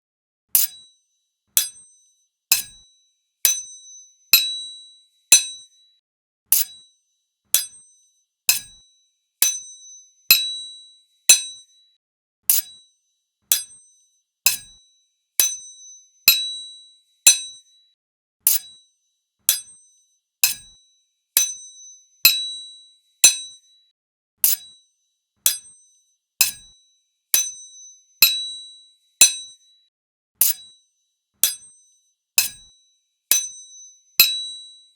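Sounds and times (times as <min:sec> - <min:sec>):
sword blades clashing: 0:30.4 - 0:30.6, 0:32.4 - 0:32.6.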